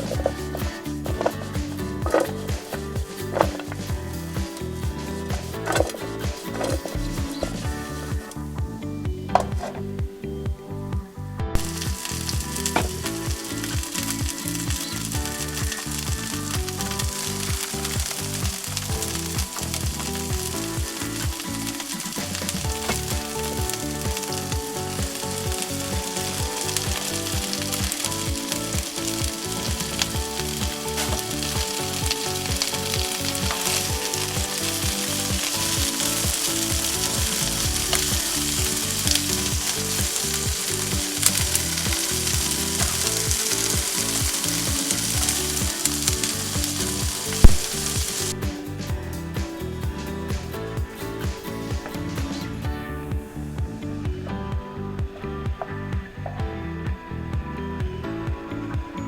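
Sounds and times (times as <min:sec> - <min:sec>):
food sizzling in a skillet: 0:11.7 - 0:48.4.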